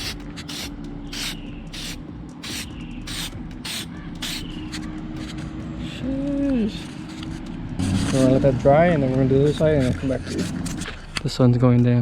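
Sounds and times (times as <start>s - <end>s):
aerosol spray hissing: 0.0s - 4.8s.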